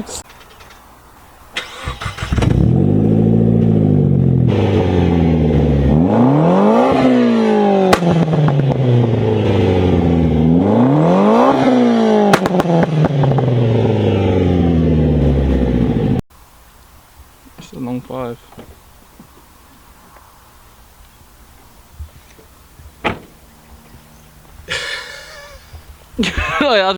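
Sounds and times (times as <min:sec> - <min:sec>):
exhaust cracks: 0:01.5 - 0:16.2, 0:17.6 - 0:26.7
car engine revving: 0:01.6 - 0:16.2, 0:22.6 - 0:26.3.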